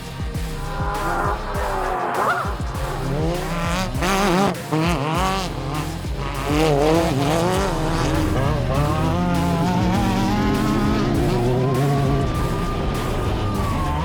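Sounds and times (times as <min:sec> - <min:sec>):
engine revving hard: 0:00.0 - 0:14.0
road and drivetrain noise: 0:00.0 - 0:14.0.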